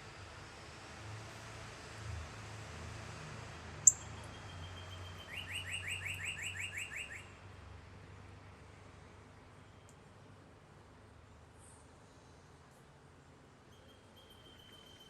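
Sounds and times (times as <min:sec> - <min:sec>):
songbird singing: 0:03.8 - 0:07.3, 0:13.7 - 0:15.0.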